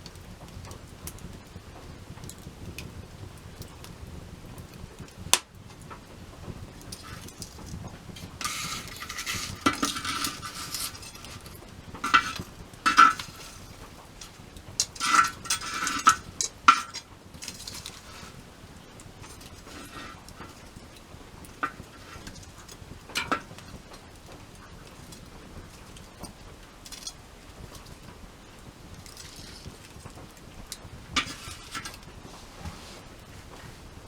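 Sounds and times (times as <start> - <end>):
metal cookware scraping: 6.8 - 23.7, 31.2 - 33.0
metal cookware click: 8.2 - 13.6, 14.8 - 18.4.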